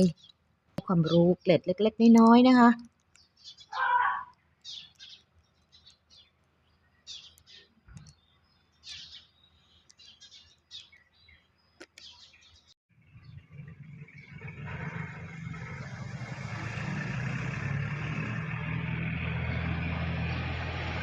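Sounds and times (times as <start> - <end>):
small birds chirping: 0.0 - 15.4
low rumbling noise: 13.0 - 21.0.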